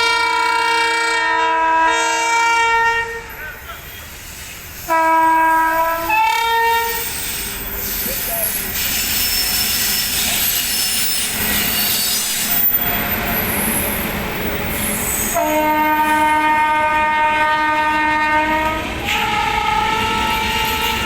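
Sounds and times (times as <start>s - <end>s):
locomotive air horn blast: 0.0s - 3.3s, 4.9s - 7.0s, 15.3s - 21.0s
train wheel squeal and rumble: 3.2s - 21.0s.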